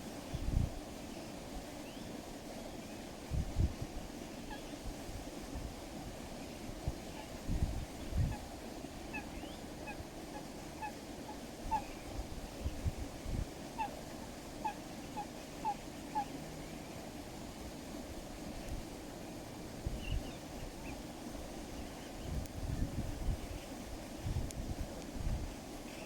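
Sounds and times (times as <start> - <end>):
coot giving short nasal calls: 14.6 - 16.3
wind knocking on microphone: 24.2 - 25.6.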